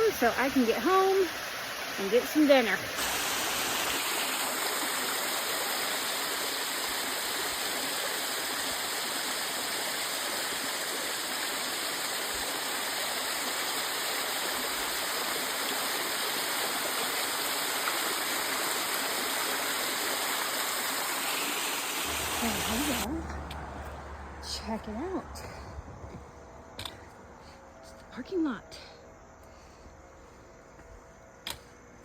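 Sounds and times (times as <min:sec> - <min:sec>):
waterfall rushing: 0:00.0 - 0:23.1.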